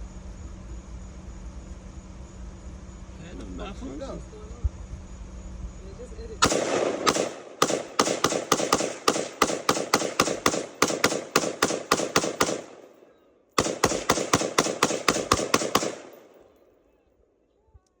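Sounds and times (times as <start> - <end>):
rapid pistol gunfire: 6.4 - 16.6.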